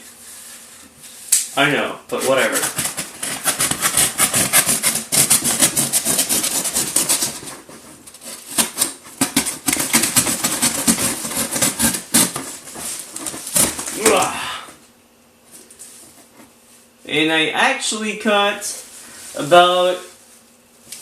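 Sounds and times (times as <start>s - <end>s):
knife sawing through cardboard: 2.2s - 14.3s.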